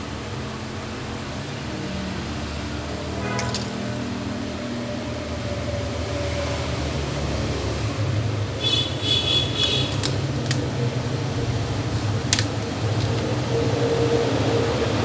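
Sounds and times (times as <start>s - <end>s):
sharp clicks: 9.6s - 11.1s, 11.7s - 13.3s.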